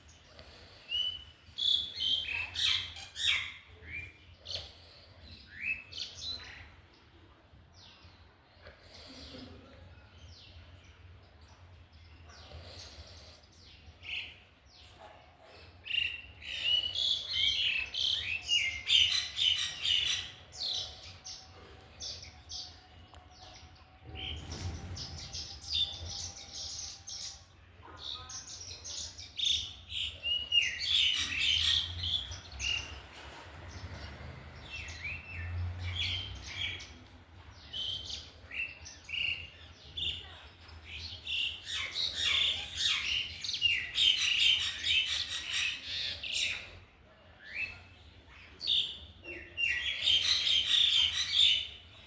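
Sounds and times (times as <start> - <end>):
small birds chirping: 0.0 - 52.0.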